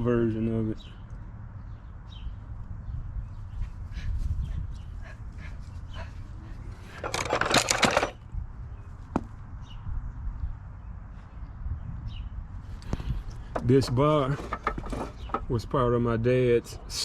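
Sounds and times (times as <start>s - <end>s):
hand tools rattling in toolbox: 6.8s - 8.2s, 13.6s - 15.5s.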